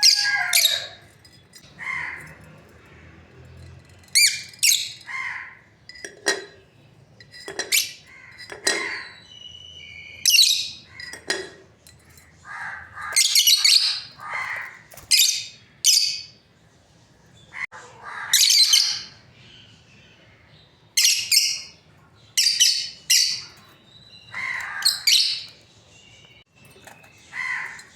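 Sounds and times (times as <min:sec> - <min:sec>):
parrots chirping and squawking: 0:00.0 - 0:06.6, 0:07.3 - 0:09.5, 0:10.1 - 0:16.4, 0:17.4 - 0:19.3, 0:21.0 - 0:27.9.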